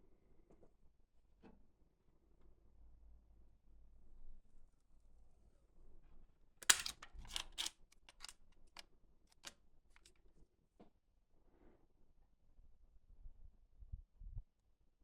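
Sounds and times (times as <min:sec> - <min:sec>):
small hard objects clicking: 0:06.6 - 0:08.3.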